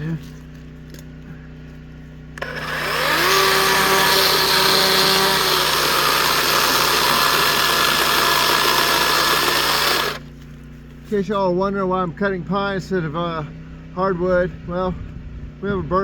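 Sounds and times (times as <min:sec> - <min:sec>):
chainsaw motor cutting wood: 0:02.2 - 0:10.4.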